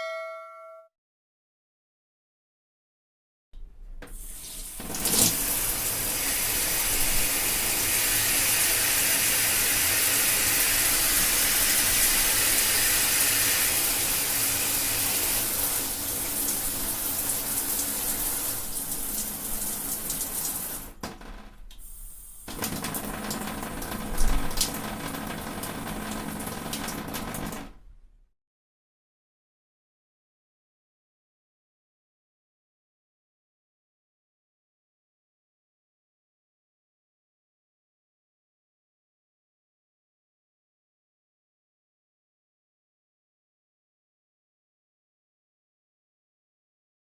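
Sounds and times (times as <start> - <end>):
shower water spraying: 4.1 - 21.0, 21.7 - 27.7.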